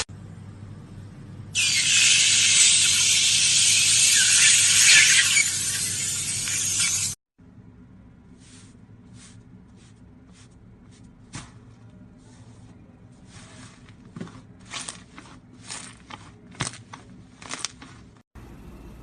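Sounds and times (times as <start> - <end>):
steady low hum: 0.0 - 1.6.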